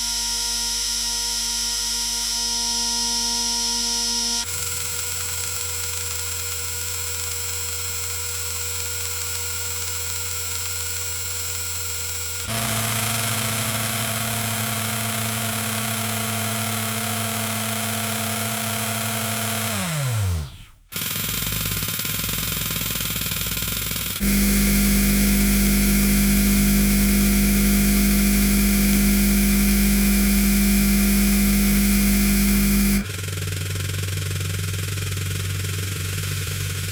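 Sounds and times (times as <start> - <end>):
auger motor humming: 10.9 - 22.4, 24.2 - 33.2.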